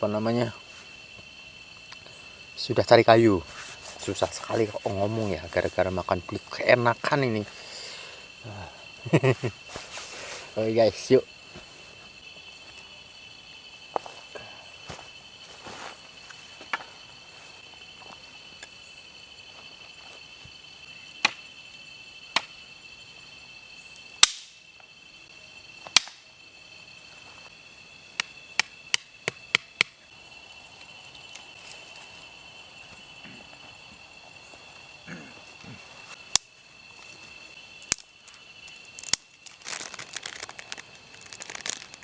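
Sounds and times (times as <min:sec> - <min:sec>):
night insect chorus: 0:00.0 - 0:42.0
dry firewood cracking: 0:37.8 - 0:42.0.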